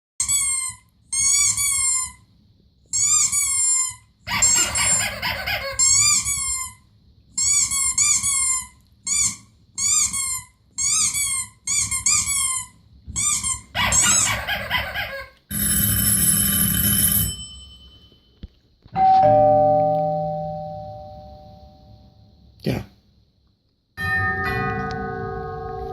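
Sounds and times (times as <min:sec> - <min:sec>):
bell chime: 0:17.1 - 0:18.4, 0:19.0 - 0:22.2, 0:24.0 - 0:25.9.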